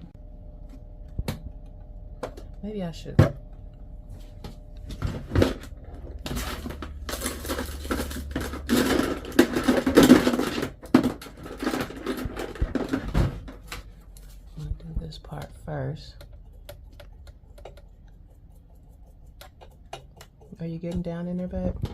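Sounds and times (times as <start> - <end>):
scraping and rattling: 4.9 - 21.9
metal parts clattering: 6.3 - 13.6.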